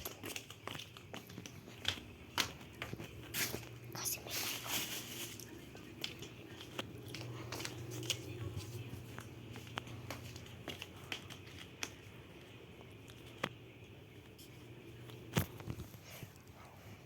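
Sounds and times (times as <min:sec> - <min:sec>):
rustling: 0:00.0 - 0:13.5
steady low hum: 0:00.0 - 0:17.0.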